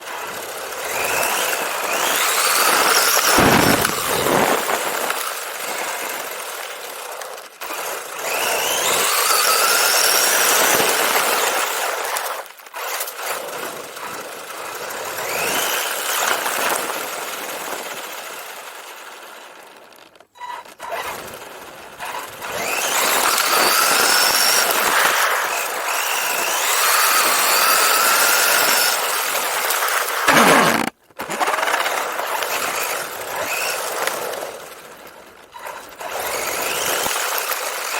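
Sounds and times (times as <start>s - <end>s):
toy car electric motor whining: 0.0s - 37.9s
tyre and road noise: 30.2s - 31.8s.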